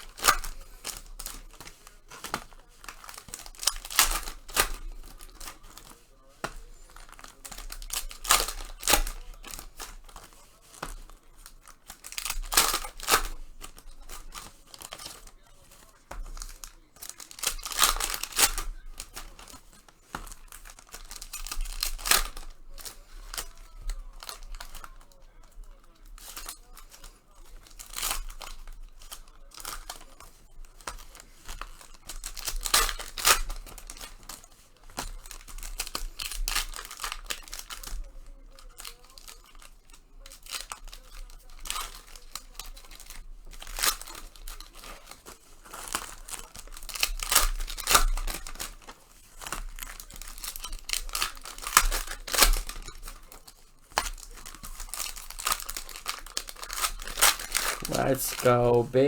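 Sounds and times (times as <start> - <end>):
card pack wrappers tearing: 0.0 - 59.0.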